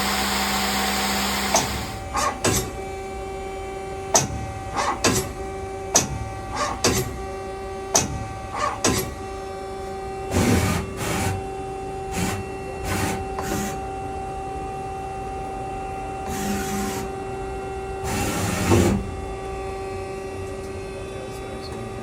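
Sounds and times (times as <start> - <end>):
machine humming: 0.0 - 2.1
whirring hissing machine bursts: 0.0 - 2.1.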